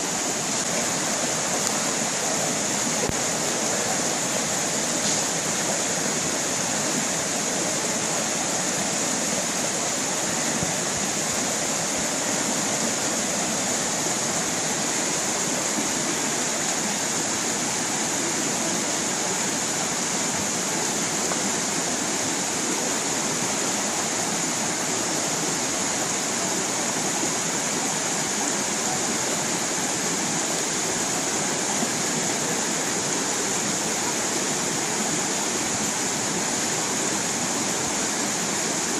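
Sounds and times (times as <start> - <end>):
stream splashing over rocks: 0.0 - 38.9.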